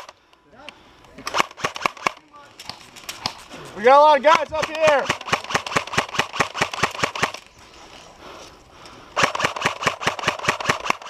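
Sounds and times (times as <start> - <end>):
airsoft guns firing: 1.2 - 7.5, 9.2 - 11.0.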